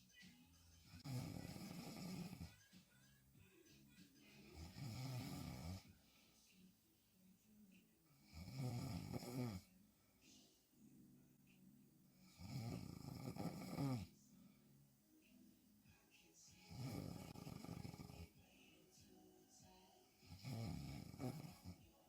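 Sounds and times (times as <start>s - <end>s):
woman snoring: 0.8s - 2.5s, 4.4s - 5.9s, 8.2s - 9.7s, 12.2s - 14.1s, 16.6s - 18.4s, 20.2s - 21.9s
quiet breathing: 3.4s - 22.0s.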